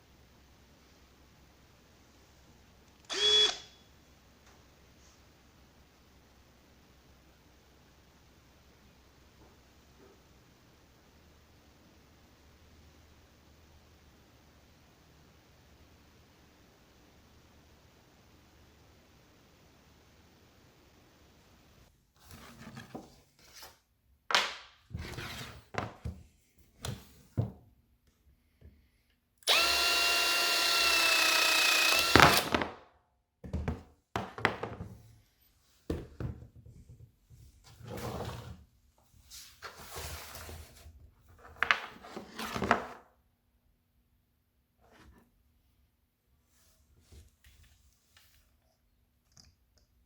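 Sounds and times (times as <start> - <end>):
power tool motor whine: 3.1 - 3.7, 29.4 - 32.6.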